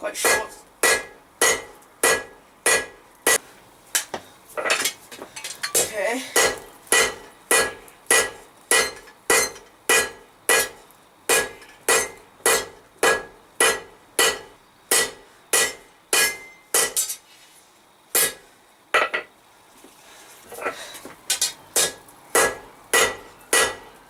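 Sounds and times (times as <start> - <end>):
hammer ringing on steel and anvil: 5.6 - 10.7, 11.3 - 17.2, 21.8 - 23.9.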